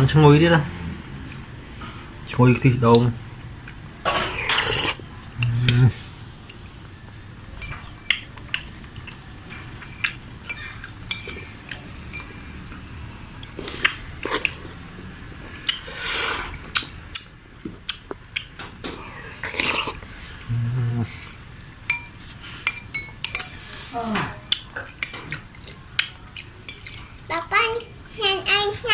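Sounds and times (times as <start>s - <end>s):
spoon clinking against bowl: 21.9s - 23.6s.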